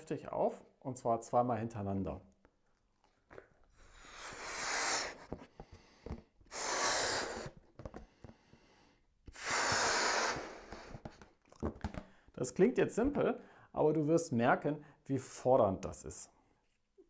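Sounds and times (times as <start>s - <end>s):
person blowing up a balloon: 3.7s - 5.5s, 6.4s - 8.1s, 9.3s - 11.2s.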